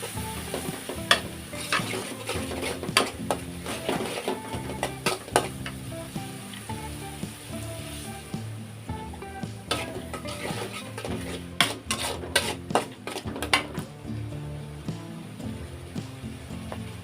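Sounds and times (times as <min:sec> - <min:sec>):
spatula scraping a pan: 0:00.0 - 0:05.8, 0:09.6 - 0:13.8
food sizzling in hot oil: 0:00.0 - 0:17.0.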